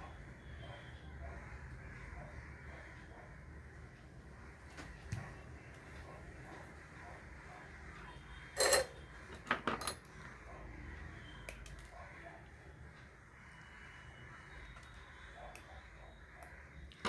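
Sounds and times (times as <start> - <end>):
metal tools clinking: 8.6 - 10.0.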